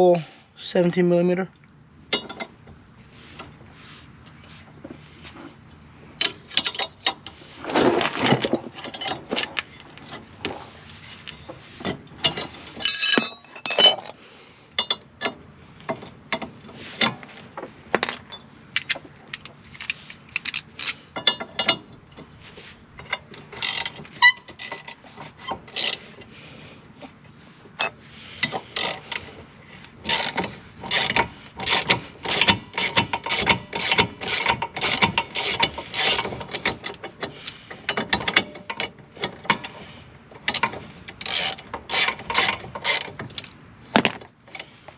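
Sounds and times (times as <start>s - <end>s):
ringing metallic clink: 12.8s - 14.1s, 18.3s - 18.8s
ratchet wrench clicking: 30.1s - 37.6s, 41.2s - 43.5s.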